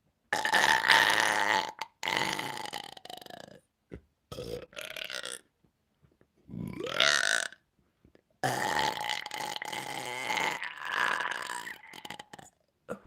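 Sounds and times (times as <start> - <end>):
woman burping: 8.4 - 13.0.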